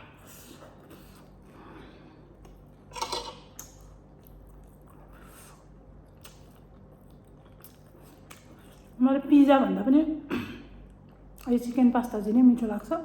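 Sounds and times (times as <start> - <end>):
wet chewing and mouth smacks: 2.4 - 9.0.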